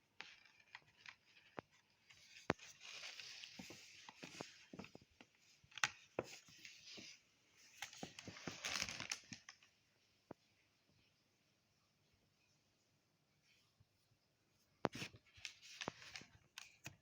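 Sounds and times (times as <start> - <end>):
rustling and crinkling: 0.0 - 10.5, 14.6 - 17.0.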